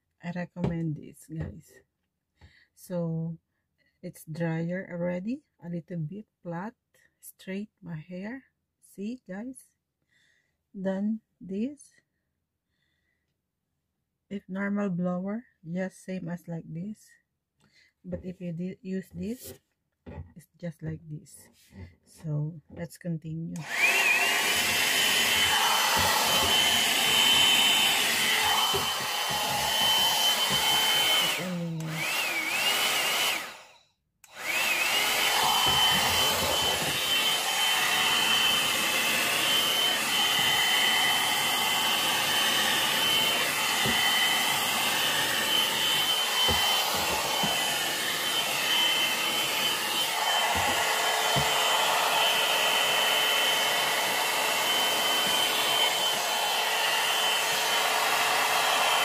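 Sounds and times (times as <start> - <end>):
hot air brush blowing: 23.6 - 59.0.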